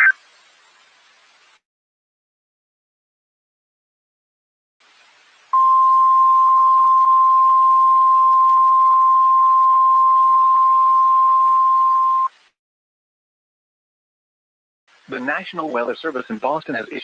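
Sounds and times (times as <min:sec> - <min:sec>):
radio hiss: 0:00.0 - 0:00.2, 0:14.9 - 0:17.0.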